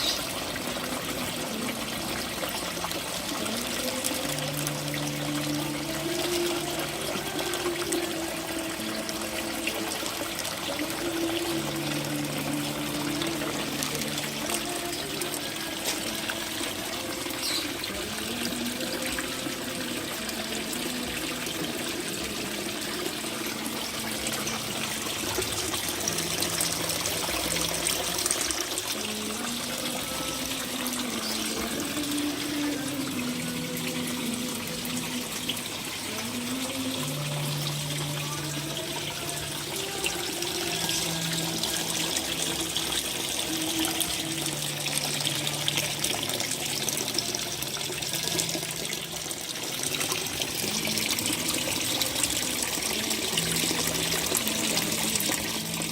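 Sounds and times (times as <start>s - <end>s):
water trickling and splashing: 0.0s - 55.9s.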